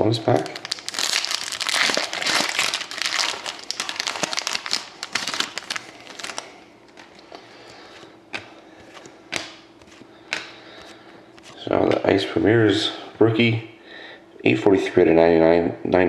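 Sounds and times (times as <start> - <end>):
wrapper tearing and crinkling: 0.2 - 7.1
cards clicking: 8.3 - 11.6.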